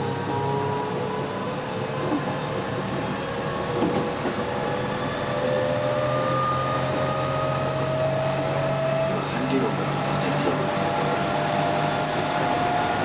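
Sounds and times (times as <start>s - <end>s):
train inverter whine: 0.0s - 13.0s
train running rumble: 6.1s - 13.0s.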